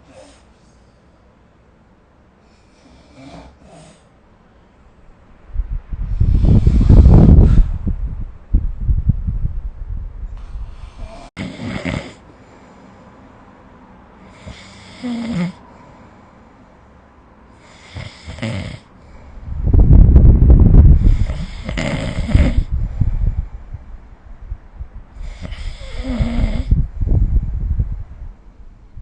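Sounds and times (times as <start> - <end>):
person snoring: 10.6 - 12.2, 14.2 - 15.6, 17.6 - 18.9, 21.0 - 22.7, 25.2 - 26.8.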